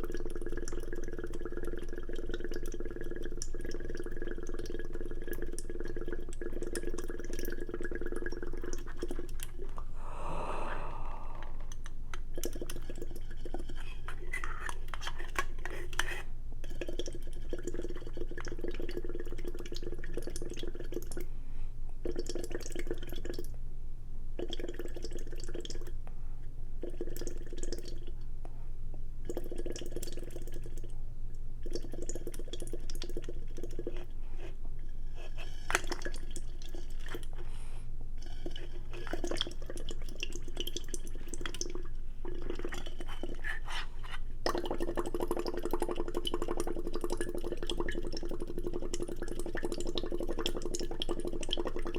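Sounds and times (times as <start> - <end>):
wet slurping mouth noises: 8.6 - 16.8, 42.3 - 46.9
steady low hum: 9.3 - 12.6.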